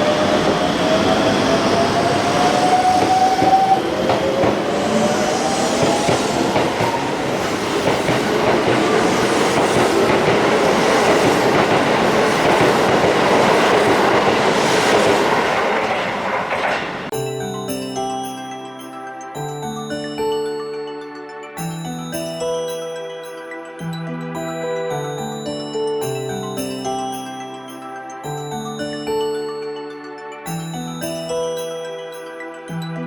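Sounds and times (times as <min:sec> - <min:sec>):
train rumble and rail clatter: 0:00.0 - 0:17.1.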